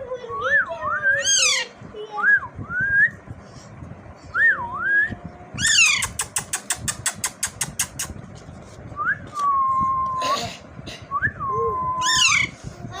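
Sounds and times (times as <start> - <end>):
parrot wavering whistle: 1.2 - 1.7, 12.0 - 12.5.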